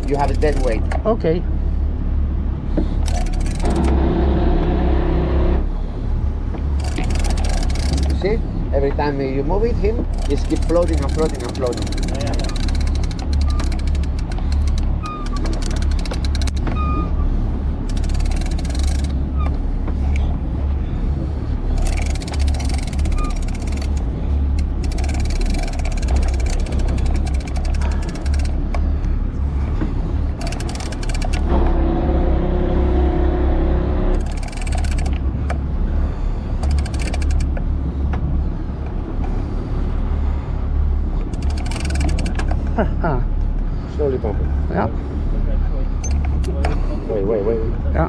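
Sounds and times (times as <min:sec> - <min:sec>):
boat engine droning: 0:00.0 - 0:48.0
fishing reel fast clicking: 0:10.2 - 0:16.6, 0:17.9 - 0:19.2, 0:21.8 - 0:28.6, 0:34.2 - 0:35.2, 0:36.6 - 0:37.5, 0:41.4 - 0:42.4
short squeaks: 0:15.0 - 0:16.0, 0:22.8 - 0:23.9.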